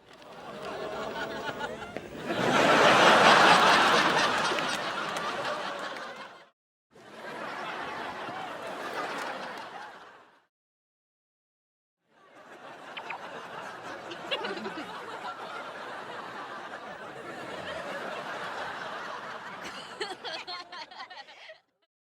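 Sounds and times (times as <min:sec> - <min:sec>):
audience laughter: 0:00.1 - 0:10.5, 0:12.2 - 0:21.6.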